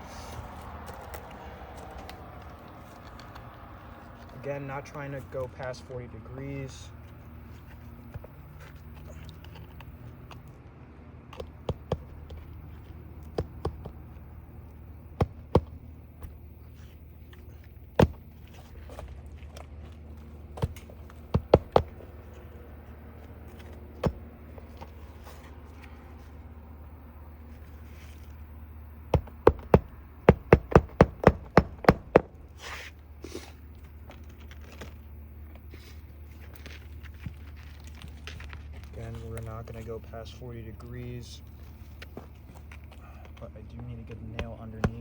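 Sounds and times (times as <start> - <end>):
hammer tapping nails: 11.4 - 12.4, 15.2 - 15.8, 20.6 - 22.0, 29.1 - 32.4.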